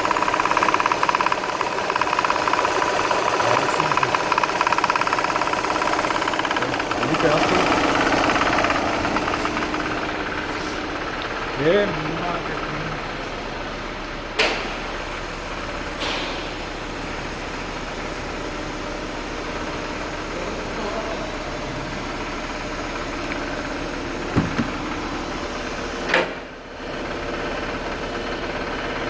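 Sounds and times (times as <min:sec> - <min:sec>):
car engine humming: 0:00.0 - 0:26.5
sharp knocks from engine: 0:14.4 - 0:14.8, 0:16.0 - 0:16.6, 0:24.2 - 0:25.1.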